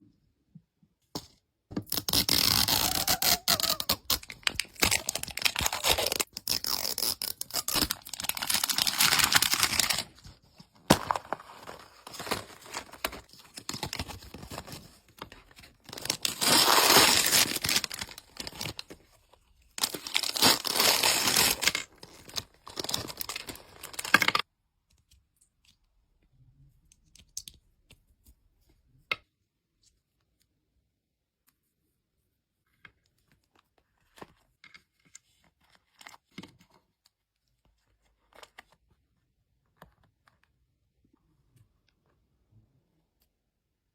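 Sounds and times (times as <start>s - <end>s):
plastic packaging tearing and crinkling: 1.9s - 10.3s, 10.9s - 18.9s, 19.8s - 24.4s.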